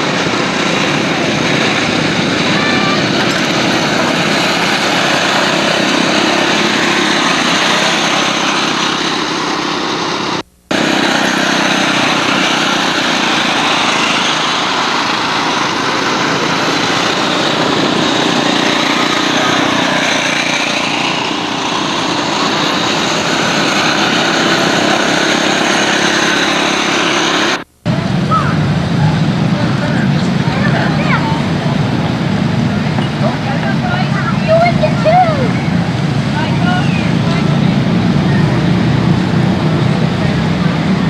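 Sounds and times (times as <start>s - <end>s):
small engine running: 0.0s - 41.0s.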